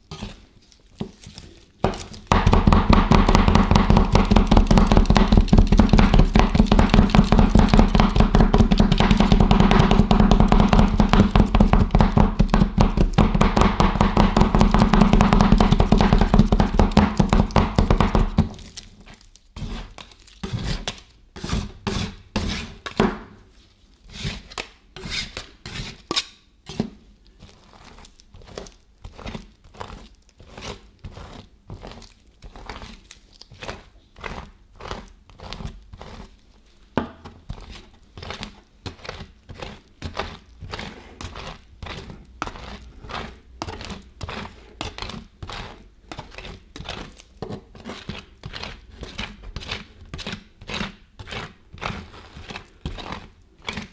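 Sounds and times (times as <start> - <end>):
metal spatulas chopping on cold plate: 1.9 - 18.6.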